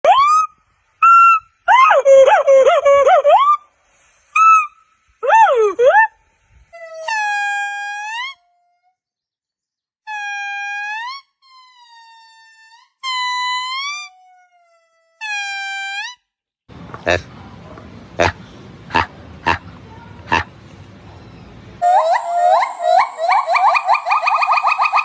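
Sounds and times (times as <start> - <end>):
monkey calls: 0.0 - 3.7, 4.4 - 6.2, 21.8 - 25.0.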